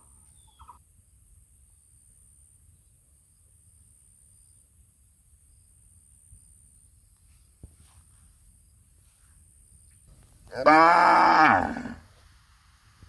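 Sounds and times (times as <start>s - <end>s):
cow mooing: 10.5s - 12.0s.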